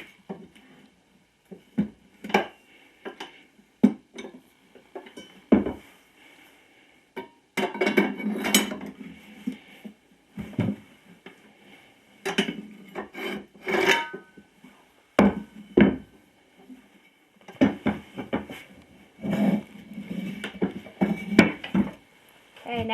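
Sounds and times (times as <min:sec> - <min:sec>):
tire tool scraping and knocking: 0:17.5 - 0:22.0.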